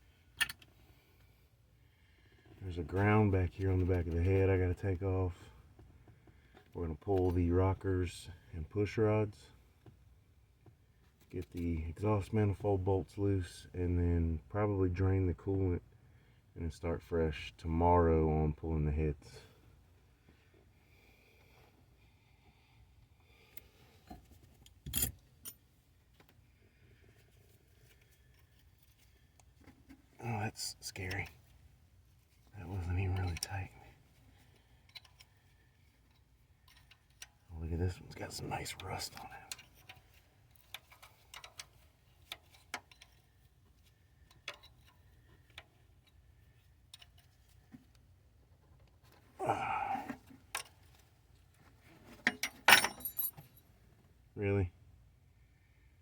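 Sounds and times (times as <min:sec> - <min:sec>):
metallic clicks of hand tools: 0:00.4 - 0:00.7
metal tools handled: 0:24.9 - 0:25.2, 0:52.1 - 0:53.6.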